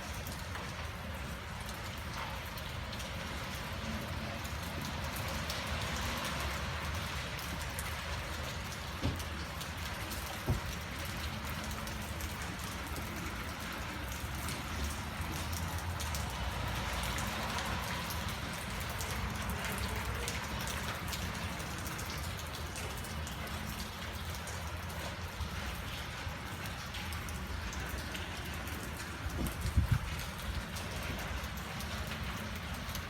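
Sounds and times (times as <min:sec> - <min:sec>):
rain falling: 0:00.0 - 0:33.0.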